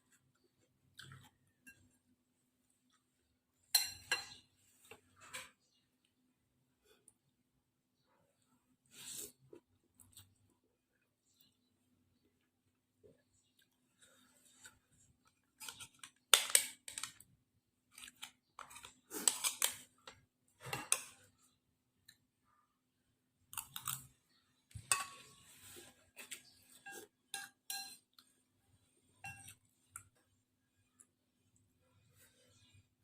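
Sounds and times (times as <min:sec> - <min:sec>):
cutlery clinking against a bowl: 0:03.7 - 0:04.5, 0:24.7 - 0:25.5, 0:26.2 - 0:28.2, 0:29.2 - 0:29.7.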